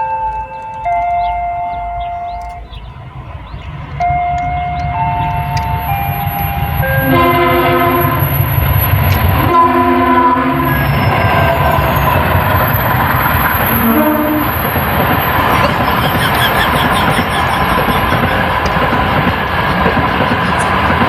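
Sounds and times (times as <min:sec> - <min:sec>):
train horn blasts: 0:00.0 - 0:03.1, 0:04.0 - 0:08.6, 0:09.2 - 0:15.9
train rumbling: 0:00.0 - 0:21.0.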